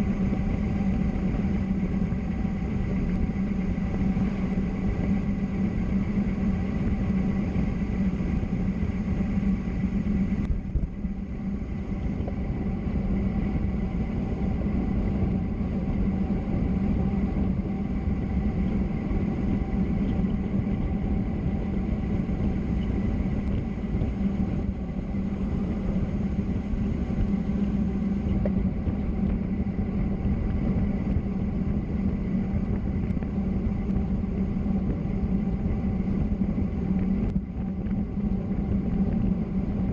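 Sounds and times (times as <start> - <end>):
low hum: 0.0 - 39.9
road and wind noise: 0.0 - 39.9.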